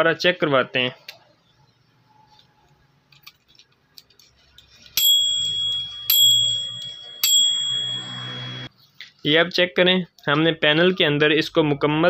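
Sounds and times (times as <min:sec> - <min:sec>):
microwave timer bell ding: 0:05.0 - 0:08.7.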